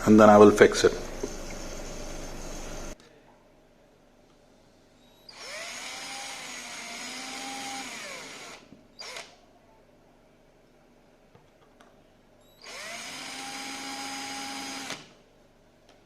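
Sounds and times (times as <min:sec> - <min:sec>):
power drill boring through plastic: 0:05.3 - 0:09.3, 0:12.6 - 0:15.1.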